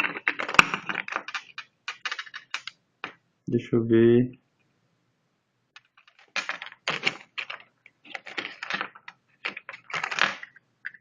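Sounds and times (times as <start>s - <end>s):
plastic parts clicking and rattling: 0.0s - 2.8s, 5.8s - 11.0s.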